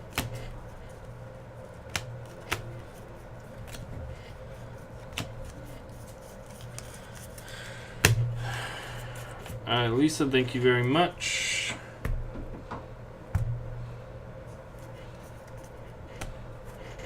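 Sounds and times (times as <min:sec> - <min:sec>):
cards being shuffled: 0:00.0 - 0:07.7, 0:14.5 - 0:17.0
steady low hum: 0:00.0 - 0:17.0.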